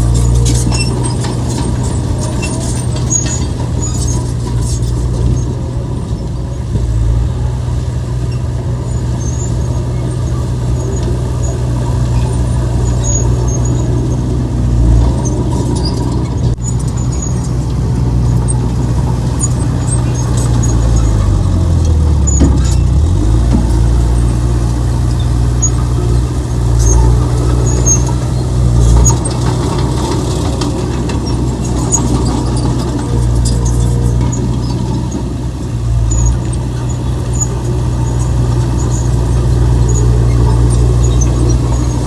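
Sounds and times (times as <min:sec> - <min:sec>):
metallic clinks and squeaks: 0:00.0 - 0:05.5, 0:09.2 - 0:17.6, 0:25.1 - 0:35.2, 0:36.0 - 0:42.0
heavy diesel engine running: 0:00.0 - 0:42.0.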